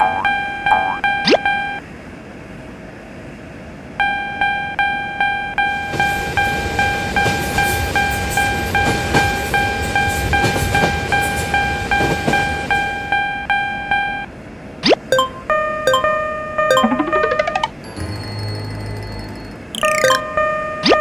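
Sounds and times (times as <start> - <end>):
railroad crossing bell ringing: 17.8 - 19.7.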